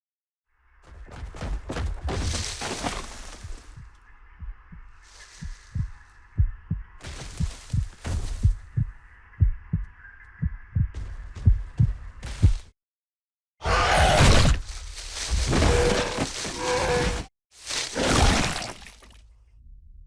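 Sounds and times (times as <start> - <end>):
low dull thumps: 3.7 - 7.1.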